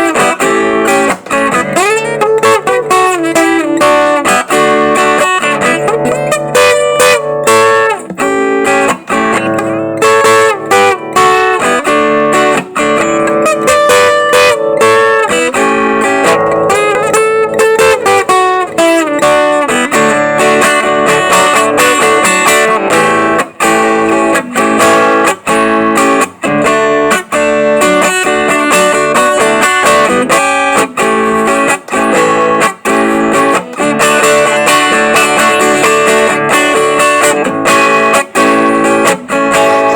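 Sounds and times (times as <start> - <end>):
acoustic guitar playing: 0.0 - 39.9.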